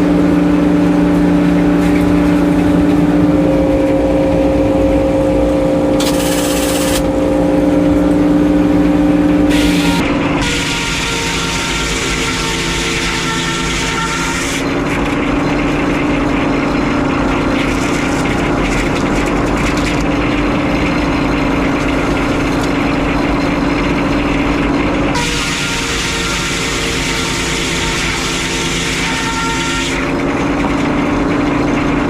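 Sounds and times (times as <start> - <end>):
circular sawmill humming: 0.0 - 32.0
fine rapid rattle: 14.7 - 25.2.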